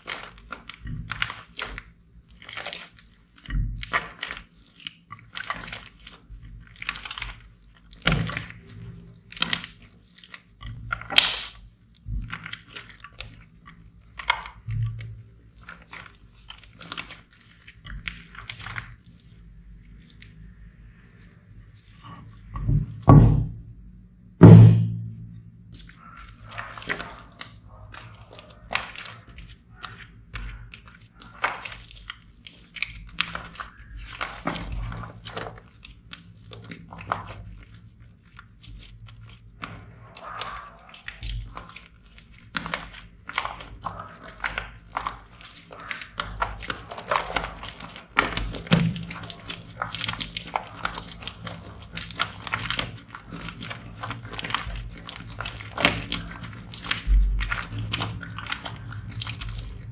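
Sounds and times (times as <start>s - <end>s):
slime squeezed and stretched: 0.0s - 23.1s, 25.7s - 59.9s
heavy low slaps: 24.4s - 25.4s.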